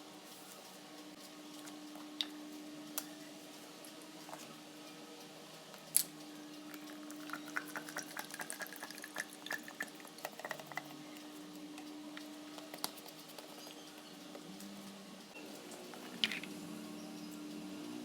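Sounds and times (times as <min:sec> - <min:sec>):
liquid pouring into a bottle: 0:06.8 - 0:10.9.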